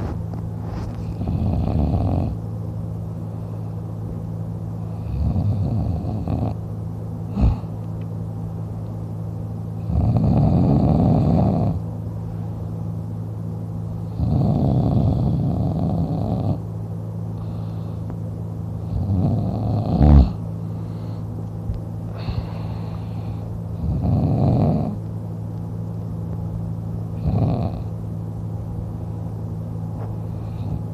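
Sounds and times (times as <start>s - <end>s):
steady low hum: 0.0s - 30.9s
man snoring: 1.1s - 2.4s, 4.9s - 6.6s, 7.3s - 7.8s, 9.8s - 11.8s, 14.1s - 16.6s, 18.8s - 20.4s, 23.8s - 25.0s, 27.2s - 27.9s
breathing: 7.3s - 7.8s, 17.3s - 18.2s, 20.6s - 21.4s, 22.1s - 23.6s, 30.2s - 30.9s.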